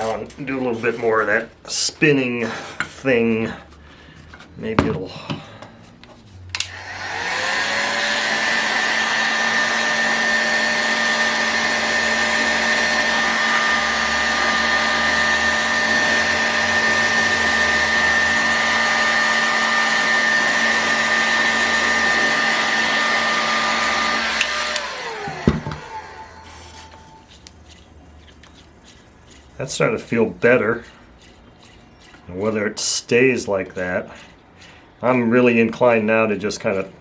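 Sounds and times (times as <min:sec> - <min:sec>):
engine crankshaft spinning whir: 0:23.7 - 0:32.2.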